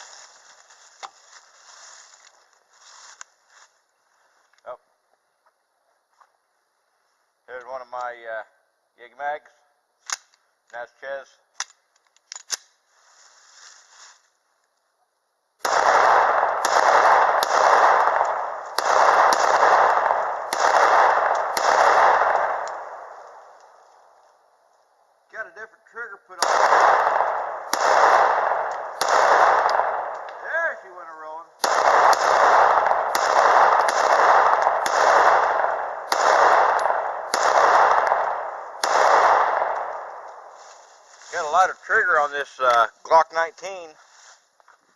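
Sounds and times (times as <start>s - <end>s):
pistol shots echoing: 15.6s - 23.8s, 26.4s - 30.7s, 31.6s - 40.5s.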